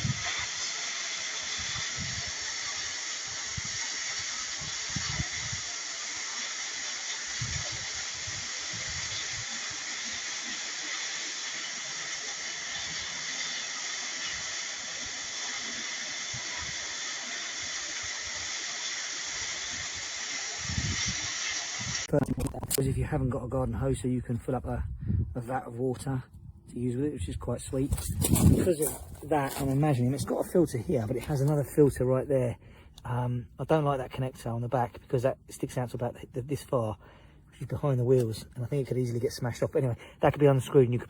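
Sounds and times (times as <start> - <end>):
pressure washer spraying paving: 0.0 - 22.1.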